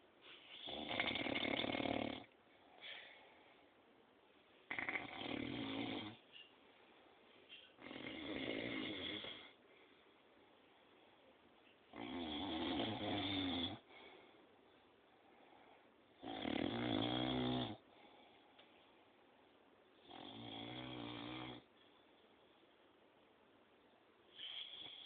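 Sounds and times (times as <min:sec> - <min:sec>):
quiet breathing: 0:00.0 - 0:05.4, 0:06.0 - 0:12.0, 0:13.3 - 0:16.2, 0:17.7 - 0:22.8, 0:24.2 - 0:25.0
man snoring loudly: 0:00.7 - 0:02.3, 0:04.7 - 0:06.2, 0:07.8 - 0:09.4, 0:12.0 - 0:13.8, 0:16.2 - 0:17.8, 0:20.1 - 0:21.6.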